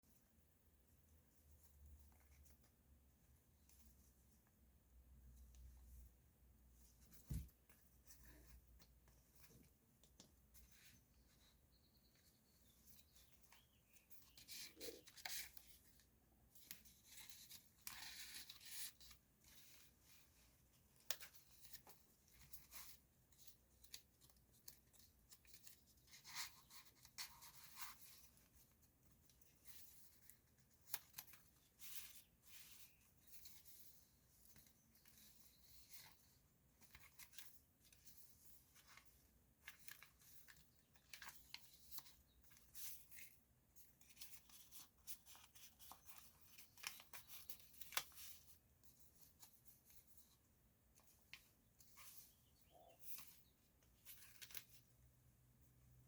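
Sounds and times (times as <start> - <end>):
paper pages rustling: 12.2 - 55.0.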